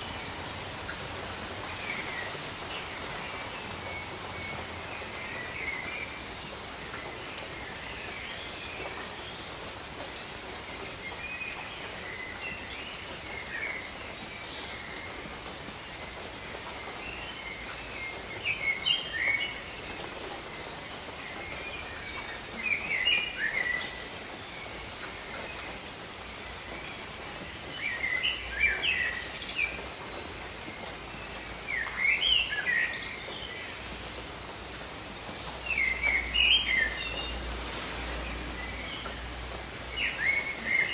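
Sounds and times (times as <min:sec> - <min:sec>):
gentle rain falling: 0:00.0 - 0:40.9
songbird chirping: 0:35.6 - 0:40.9.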